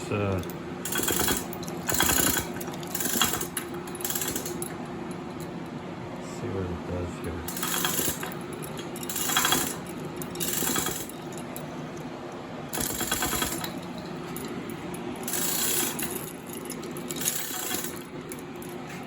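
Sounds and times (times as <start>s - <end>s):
hoist rattling and clicking: 0.4s - 4.8s, 7.5s - 12.1s, 12.7s - 19.0s.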